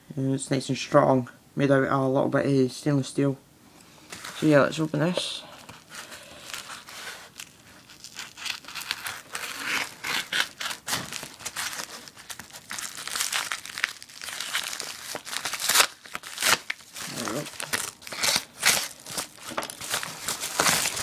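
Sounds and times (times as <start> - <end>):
packaging crinkling and tearing: 5.1 - 21.0.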